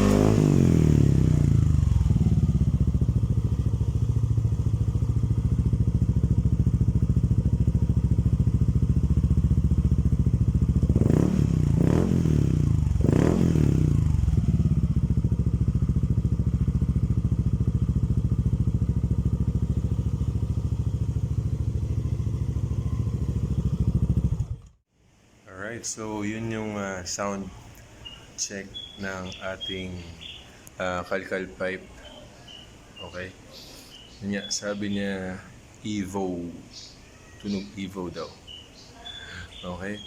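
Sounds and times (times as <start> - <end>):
scooter throttle blips: 0.0 - 12.1, 12.7 - 24.8
scooter engine idling: 0.0 - 24.9, 27.0 - 30.7.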